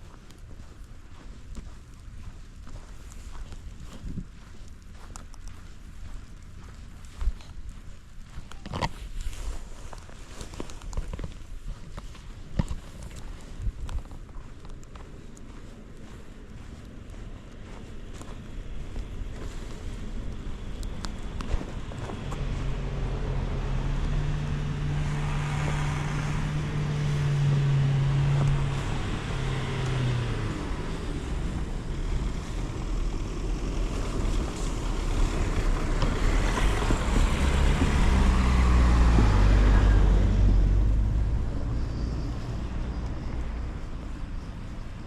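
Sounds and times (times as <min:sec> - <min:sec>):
vehicle engine hum: 0:00.0 - 0:45.0
heavy vehicle deep rumble: 0:12.0 - 0:45.0.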